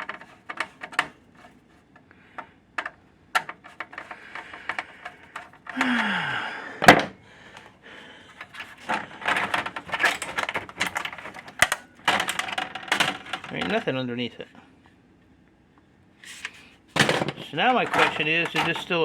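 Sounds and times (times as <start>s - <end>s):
clicking and rattling: 0.0s - 6.0s, 8.3s - 13.9s, 16.4s - 19.0s.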